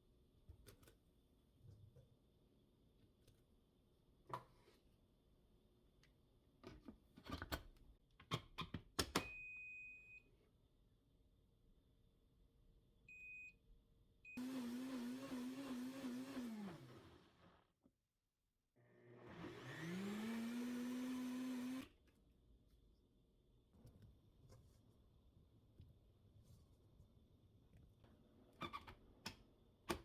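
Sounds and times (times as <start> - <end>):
high-speed electric motor spinning down: 19.1 - 21.8.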